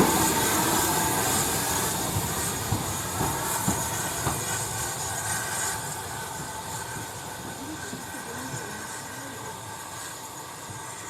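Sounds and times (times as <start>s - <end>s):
steam train passing: 0.0s - 11.0s.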